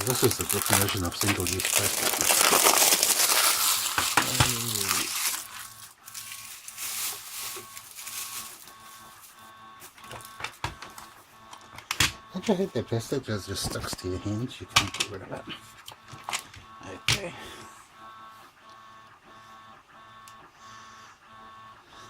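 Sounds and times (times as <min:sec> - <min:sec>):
plastic packaging crinkling: 0:00.0 - 0:11.2.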